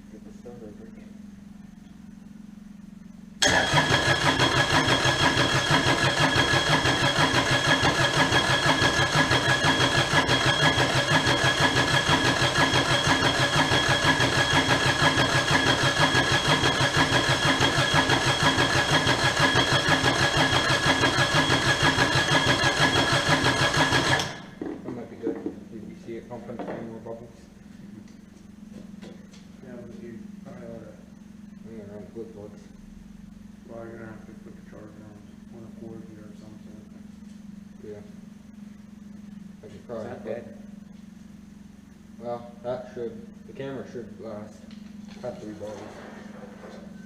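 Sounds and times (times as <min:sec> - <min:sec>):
diesel engine cranking on starter: 0:03.4 - 0:24.6.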